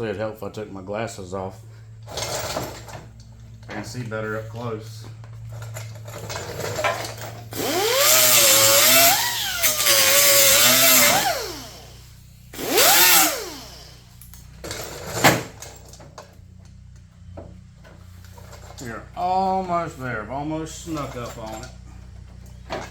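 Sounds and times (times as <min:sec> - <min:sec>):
power grinder grinding steel: 0:06.4 - 0:14.2.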